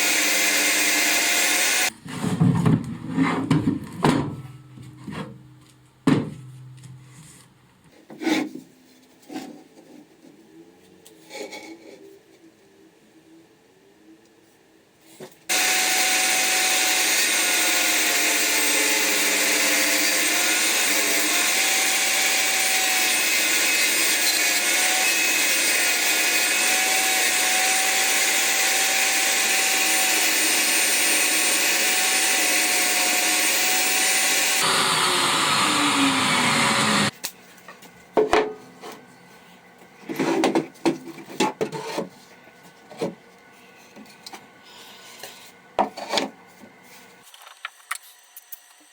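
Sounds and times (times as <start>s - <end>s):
power tool motor running: 0.0s - 1.9s, 15.5s - 37.1s
motor winding down whine: 33.1s - 37.1s.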